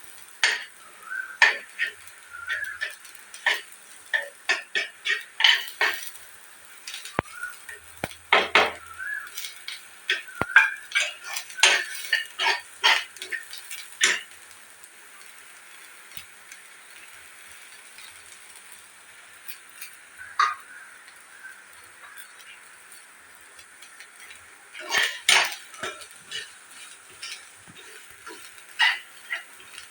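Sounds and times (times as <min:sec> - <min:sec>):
dishes clinking and scraping: 0:00.4 - 0:06.2, 0:06.8 - 0:14.4, 0:19.4 - 0:20.8, 0:23.5 - 0:29.9.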